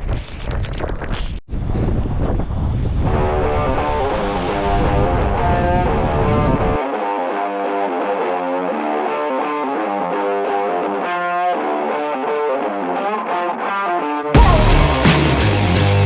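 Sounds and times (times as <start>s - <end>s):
low wind rumble: 0.0s - 6.8s
distorted electric guitar riff: 3.2s - 16.0s.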